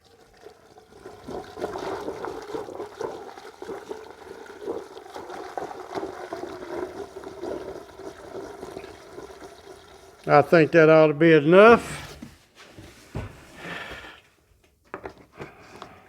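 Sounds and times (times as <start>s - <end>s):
fuel pouring through funnel: 0.0s - 12.2s.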